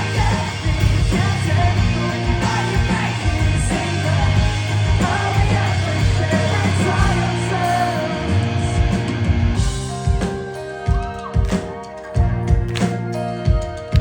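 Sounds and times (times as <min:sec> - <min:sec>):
sung and shouted lead vocal: 0:00.0 - 0:10.2
live pop-punk band: 0:00.0 - 0:14.0.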